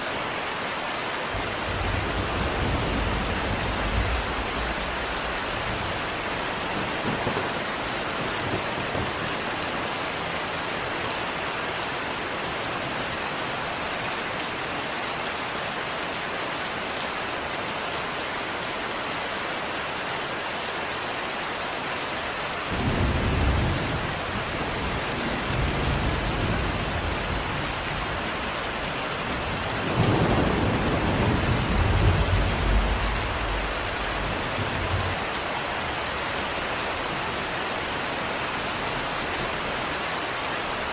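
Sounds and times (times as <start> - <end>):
steady rain falling: 0.0 - 40.9
low rolls of thunder: 1.3 - 9.9, 22.7 - 35.2.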